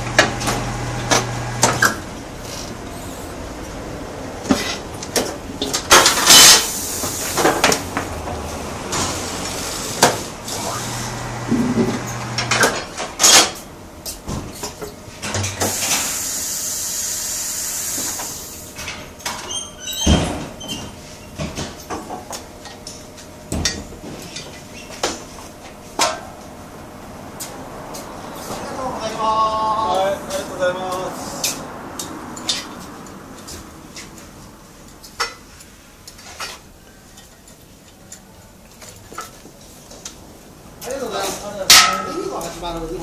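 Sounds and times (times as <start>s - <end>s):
compressed air hissing: 6.3s - 7.6s, 15.6s - 18.6s
metal clanks and knocks: 41.7s - 42.5s.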